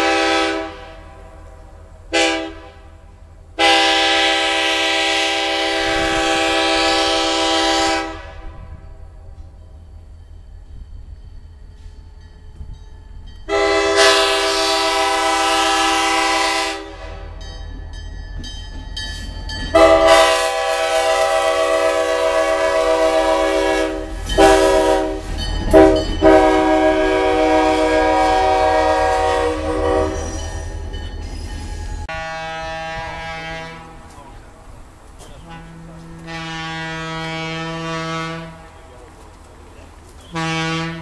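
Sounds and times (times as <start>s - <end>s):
air horn chord blasts: 2.1s - 2.8s, 3.6s - 8.5s, 13.5s - 17.2s, 19.8s - 30.4s, 32.1s - 34.0s, 35.4s - 38.5s.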